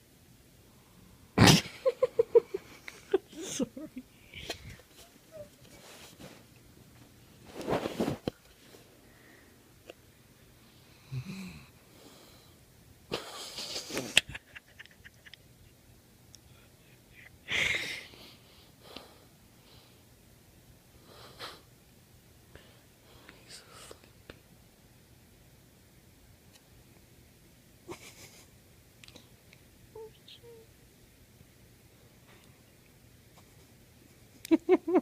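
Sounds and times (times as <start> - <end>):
wheezy snoring: 11.0 - 11.8.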